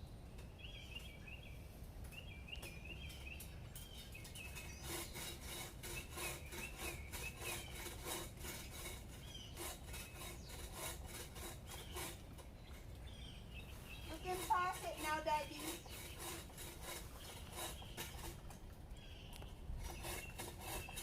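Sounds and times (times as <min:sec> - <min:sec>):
birds chirping: 0:00.0 - 0:21.0
hand saw cutting branch: 0:04.0 - 0:12.9, 0:13.7 - 0:18.7, 0:19.3 - 0:21.0.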